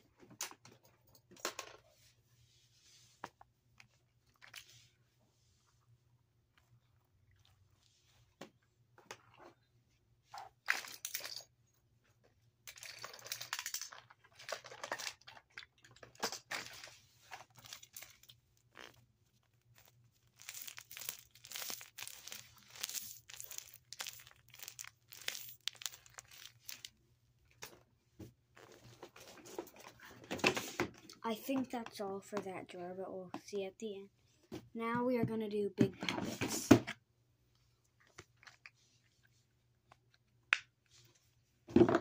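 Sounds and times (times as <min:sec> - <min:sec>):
fidget toys crinkling and clicking: 0:12.6 - 0:27.9.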